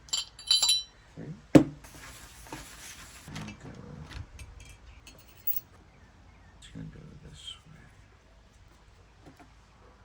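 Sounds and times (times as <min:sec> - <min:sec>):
metallic clink: 0:00.0 - 0:01.0, 0:04.6 - 0:05.7.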